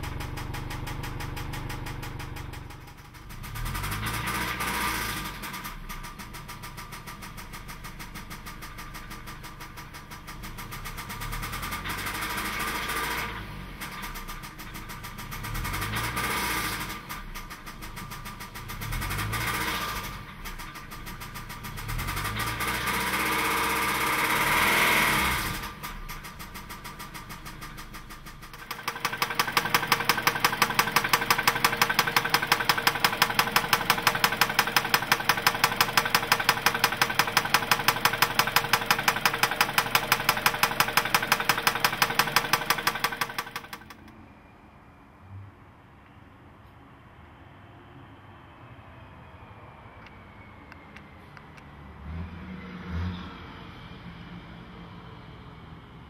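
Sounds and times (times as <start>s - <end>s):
car engine revving: 0.0s - 5.9s, 15.3s - 17.2s, 18.7s - 20.4s, 21.2s - 26.0s, 28.5s - 44.1s
sharp engine knock: 28.5s - 44.1s.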